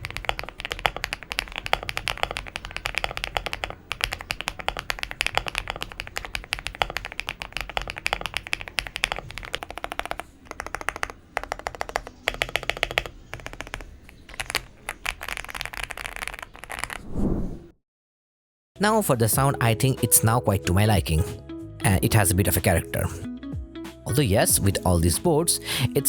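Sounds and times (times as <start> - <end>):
mechanical keyboard typing: 0.0 - 17.0.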